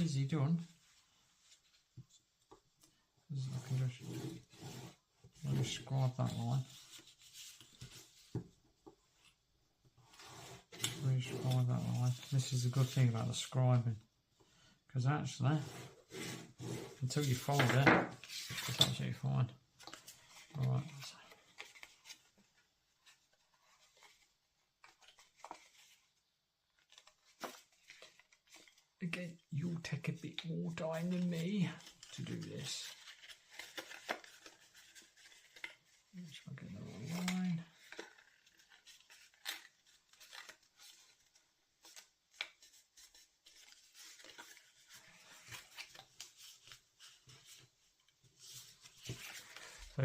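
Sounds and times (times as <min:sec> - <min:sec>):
cardstock rustling and folding: 0:00.0 - 0:13.9, 0:15.4 - 0:50.0
cardstock rustling and clicking: 0:31.0 - 0:36.1, 0:37.0 - 0:50.0.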